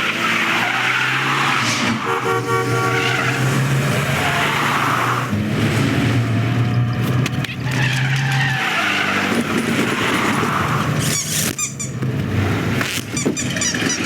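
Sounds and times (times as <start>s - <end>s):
car engine and road noise: 0.0s - 14.0s
short high squeaks: 11.0s - 12.0s, 12.9s - 14.0s.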